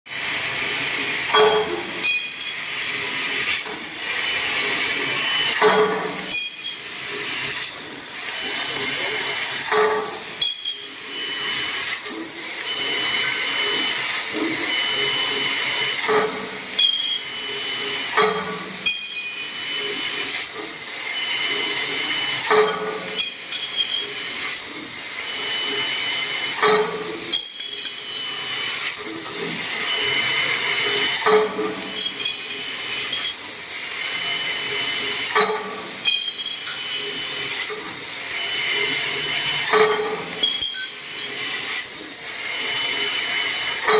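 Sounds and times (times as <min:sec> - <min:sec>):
laser cutter hiss and whine: 0:00.1 - 0:43.9
machine clatter: 0:00.2 - 0:43.9.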